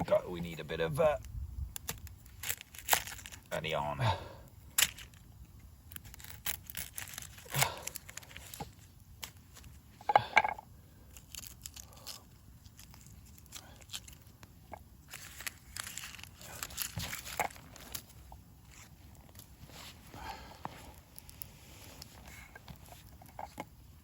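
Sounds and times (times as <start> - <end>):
onion skin tearing and crinkling: 1.2 - 3.5, 4.6 - 9.9, 10.9 - 19.6.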